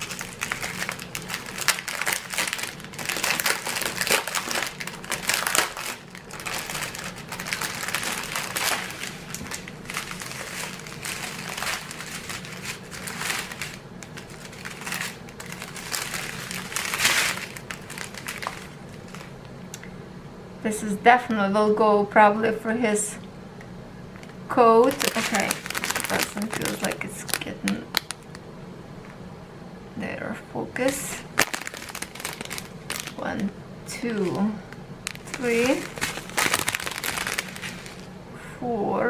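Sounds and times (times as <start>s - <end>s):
plastic bags crinkling: 0.0s - 19.9s, 24.8s - 28.4s, 31.2s - 33.5s, 35.0s - 38.1s.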